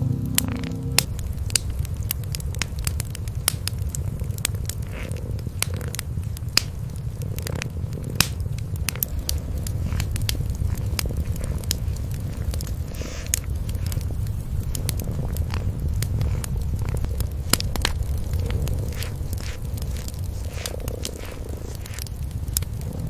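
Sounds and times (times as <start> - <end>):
cats purring: 0.0 - 23.0
wood fire crackling: 0.0 - 23.0.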